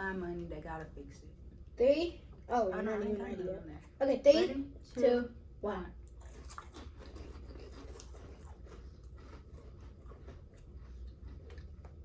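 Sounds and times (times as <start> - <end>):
low room hum: 0.0 - 12.0
people chewing: 6.0 - 12.0.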